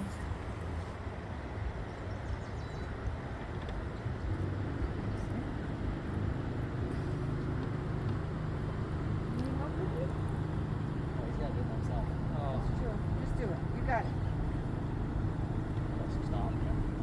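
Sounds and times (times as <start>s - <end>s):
engine humming: 0.0s - 17.0s
outdoor rumble: 0.0s - 17.0s.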